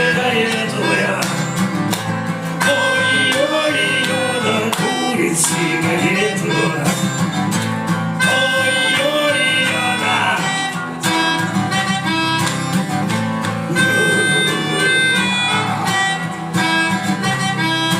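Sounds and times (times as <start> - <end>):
band playing instrumental: 13.6 - 16.9.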